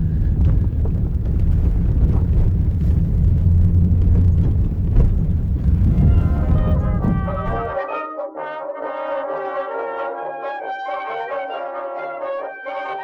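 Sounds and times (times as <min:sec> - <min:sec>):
vehicle rumbling: 0:00.0 - 0:07.8.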